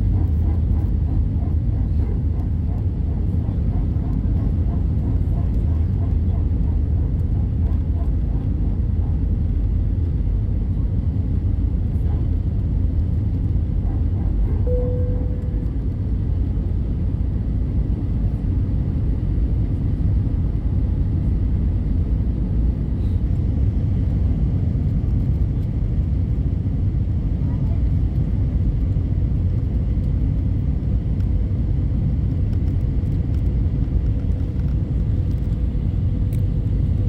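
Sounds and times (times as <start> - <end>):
airplane cabin engine noise: 0.0 - 37.0
brief tone: 14.6 - 15.9.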